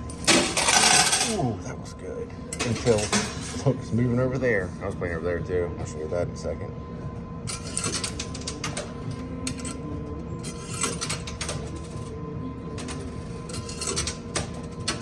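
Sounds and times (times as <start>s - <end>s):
coins clinking in coin pusher: 0.0s - 1.5s, 2.5s - 3.7s, 7.5s - 15.0s.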